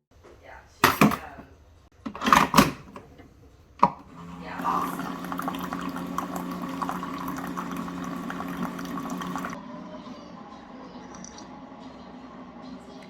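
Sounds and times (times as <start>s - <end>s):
water running: 4.1s - 9.6s.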